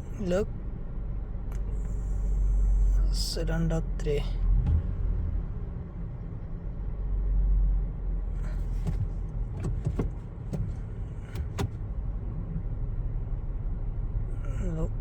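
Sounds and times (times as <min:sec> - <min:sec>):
engine idling with misfires: 0:08.2 - 0:12.0.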